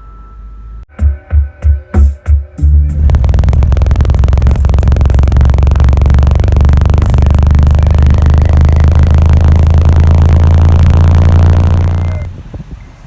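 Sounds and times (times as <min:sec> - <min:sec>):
very loud deep bass: 0:02.8 - 0:12.3.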